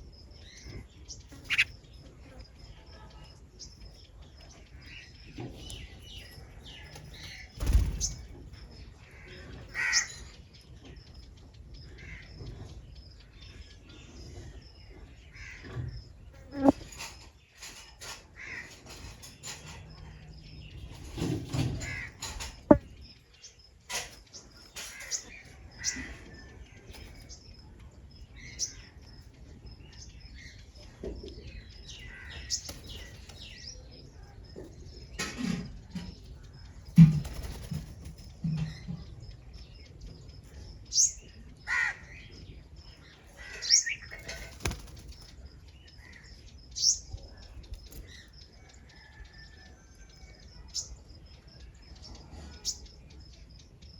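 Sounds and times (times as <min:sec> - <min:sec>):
small birds chirping: 0:00.0 - 0:53.9
crows cawing: 0:09.8 - 0:10.1, 0:41.7 - 0:42.1.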